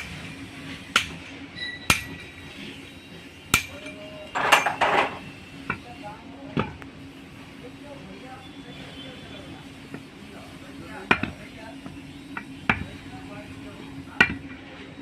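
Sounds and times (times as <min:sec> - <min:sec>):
hammer striking steel: 0:00.9 - 0:02.3, 0:03.5 - 0:05.2.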